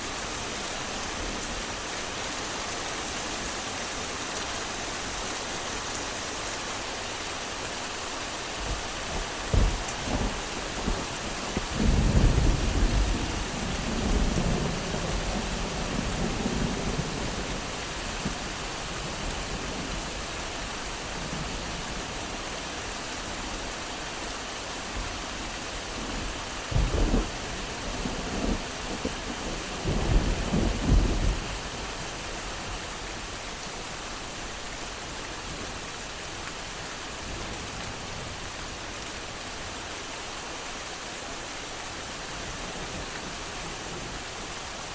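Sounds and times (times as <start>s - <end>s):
steady rain hiss: 0.0s - 44.9s
thunder rumbles: 8.5s - 22.3s, 26.0s - 32.7s.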